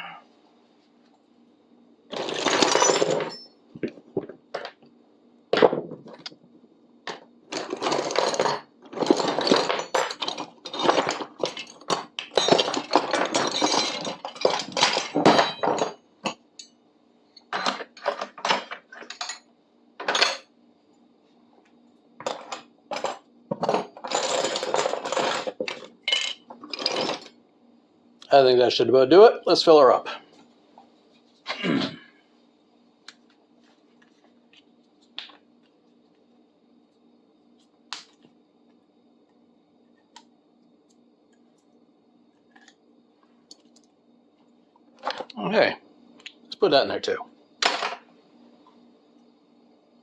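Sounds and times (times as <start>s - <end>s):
metal tools clattering into bucket: 2.1s - 3.6s, 7.5s - 16.0s, 22.3s - 27.3s.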